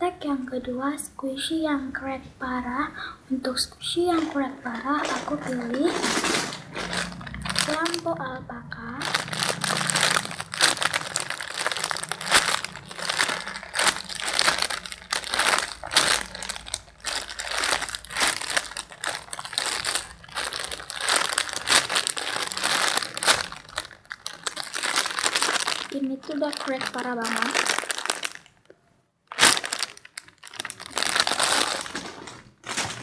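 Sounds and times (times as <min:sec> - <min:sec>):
squishy toy crinkling when squeezed: 0:06.8 - 0:08.0, 0:09.0 - 0:28.6, 0:29.3 - 0:32.0.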